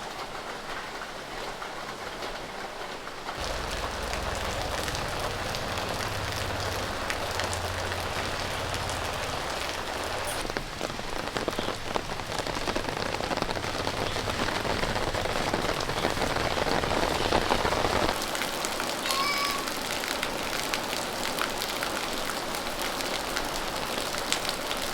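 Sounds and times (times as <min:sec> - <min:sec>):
rain on hard surfaces: 0:00.0 - 0:24.9
low hum: 0:03.4 - 0:10.4.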